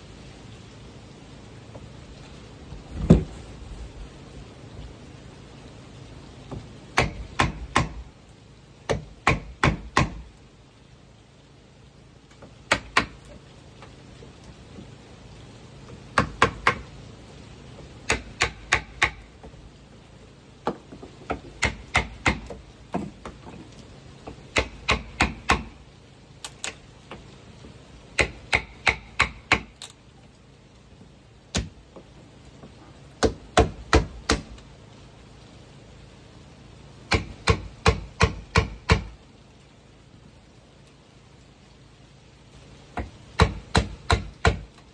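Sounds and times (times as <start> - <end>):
hand tool striking wood: 3.0 - 3.4, 7.0 - 8.0, 8.9 - 10.2, 20.6 - 23.6, 24.2 - 25.7, 31.5 - 31.7, 37.1 - 39.1, 43.0 - 44.7.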